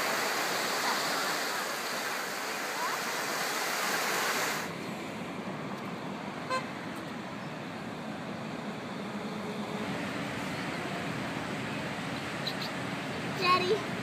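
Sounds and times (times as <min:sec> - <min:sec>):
street traffic: 0:00.0 - 0:14.0
car horn toot: 0:06.5 - 0:06.7.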